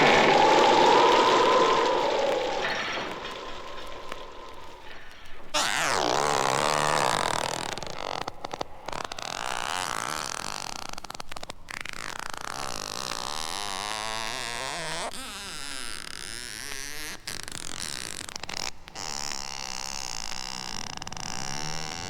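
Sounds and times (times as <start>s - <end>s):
wavering spooky wails: 0.0s - 5.2s
background hiss: 0.0s - 12.9s.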